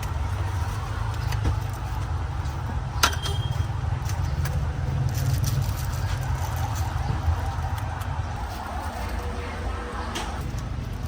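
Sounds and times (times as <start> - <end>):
street traffic rumble: 0.0 - 11.0.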